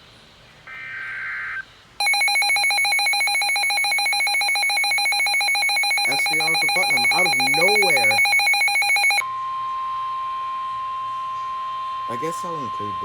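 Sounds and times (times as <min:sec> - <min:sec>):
digital data tones: 0:00.7 - 0:09.2
buzzy electronic alarm tone: 0:00.7 - 0:13.0.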